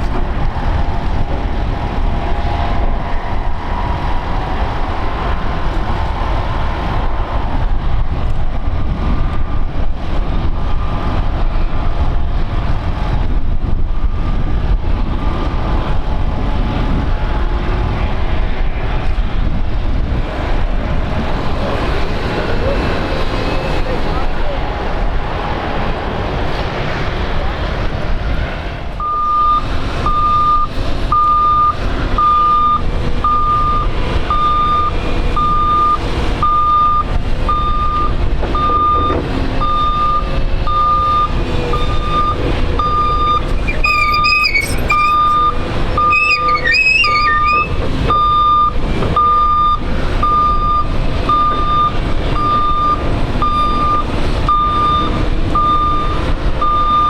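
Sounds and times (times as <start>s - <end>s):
vehicle reversing alarm beeping: 29.0s - 57.0s
short warbling chirps: 43.6s - 45.4s, 46.0s - 47.8s.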